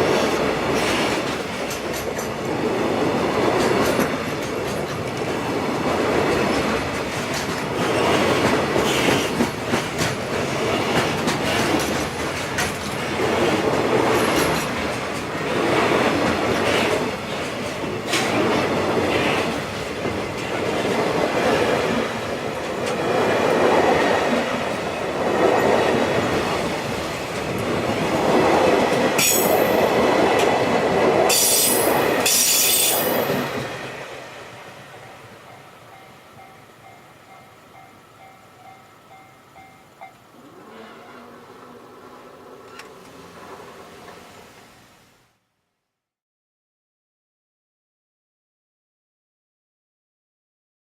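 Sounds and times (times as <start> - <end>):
train wheels clattering over rails: 0.0 - 34.2.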